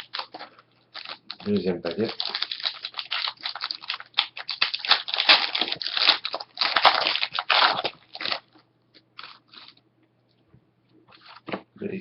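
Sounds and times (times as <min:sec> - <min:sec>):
wrapper tearing and crinkling: 0:00.0 - 0:08.6, 0:09.2 - 0:09.8.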